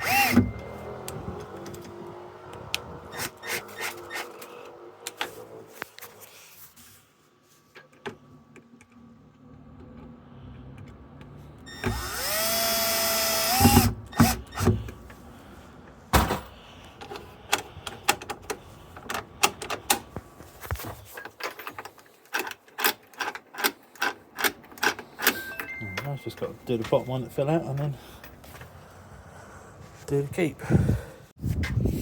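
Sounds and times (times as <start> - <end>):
cordless drill whining: 0.0 - 1.9, 11.7 - 15.0.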